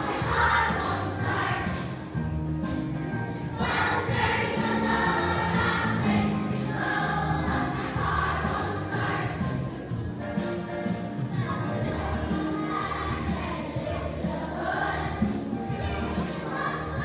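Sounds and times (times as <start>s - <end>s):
group singing in unison: 0.0s - 2.0s, 3.6s - 9.6s
musical accompaniment: 0.0s - 17.0s.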